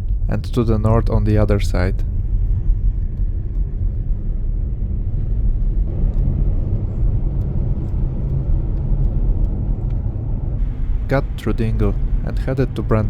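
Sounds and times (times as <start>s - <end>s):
car engine and road noise: 5.8s - 13.0s.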